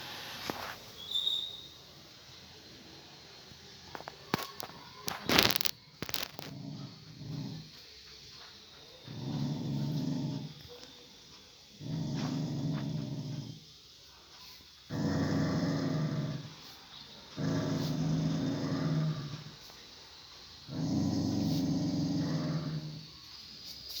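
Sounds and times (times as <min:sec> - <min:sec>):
dog growling low: 0:06.4 - 0:07.8, 0:09.0 - 0:10.7, 0:11.7 - 0:13.7, 0:14.9 - 0:16.6, 0:17.3 - 0:19.6, 0:20.7 - 0:23.1.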